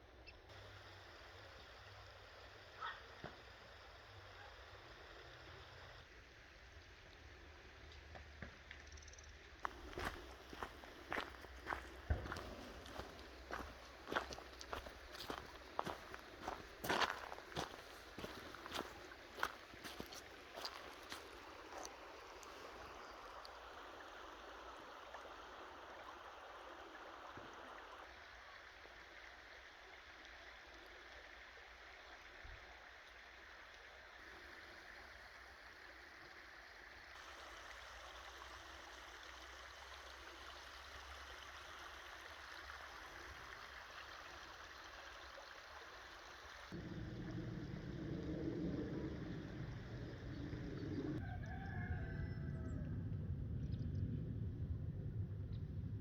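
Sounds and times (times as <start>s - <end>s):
running water rushing: 9.6s - 51.2s.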